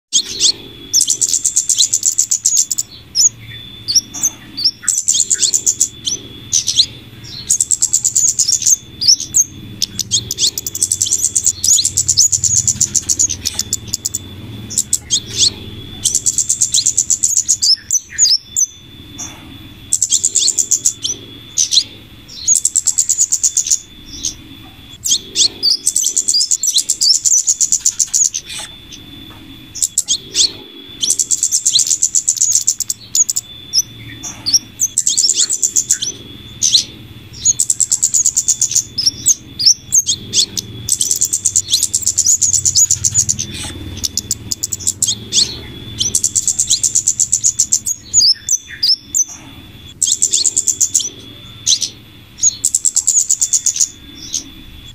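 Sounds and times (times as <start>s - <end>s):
high-pitched bird chattering: 0.1s - 54.6s
thin high whine: 0.1s - 54.9s.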